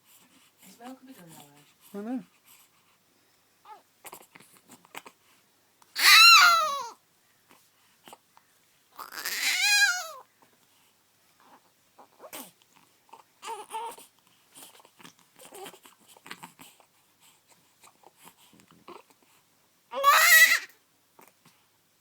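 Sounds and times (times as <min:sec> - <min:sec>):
baby crying: 0:06.0 - 0:07.0, 0:09.0 - 0:10.2, 0:19.9 - 0:20.7
baby fussing: 0:06.0 - 0:07.0, 0:09.0 - 0:10.2, 0:19.9 - 0:20.7.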